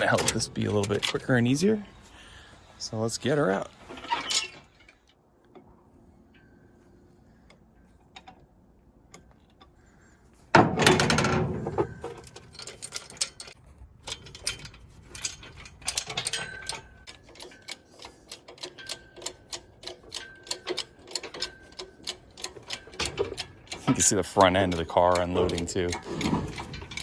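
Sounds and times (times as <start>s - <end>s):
hoist metallic clicks and creaks: 0.0s - 1.9s, 3.2s - 5.7s, 10.5s - 27.0s
clattering rattle: 10.6s - 17.7s, 18.6s - 27.0s.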